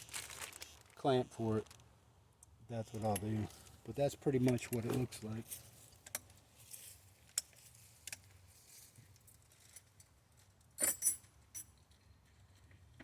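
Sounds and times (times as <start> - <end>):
small metal objects jangling: 10.8 - 11.9.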